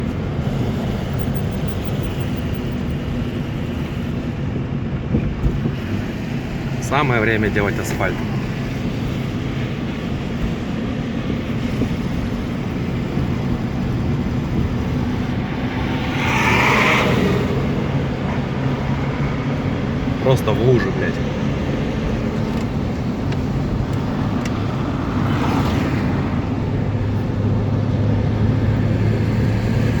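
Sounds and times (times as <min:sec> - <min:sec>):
machinery engine rumbling: 0:00.0 - 0:30.0
machinery engine humming: 0:17.1 - 0:30.0.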